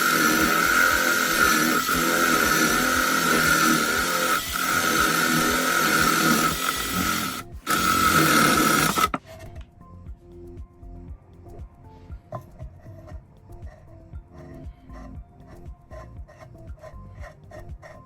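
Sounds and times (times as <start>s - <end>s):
power tool motor running: 0.0s - 9.2s
faint music: 0.0s - 18.0s.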